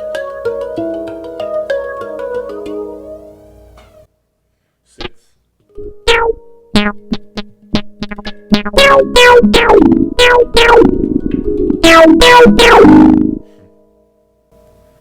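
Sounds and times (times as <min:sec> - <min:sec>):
handpan notes with electronic effect: 0:00.0 - 0:04.0, 0:05.7 - 0:13.6.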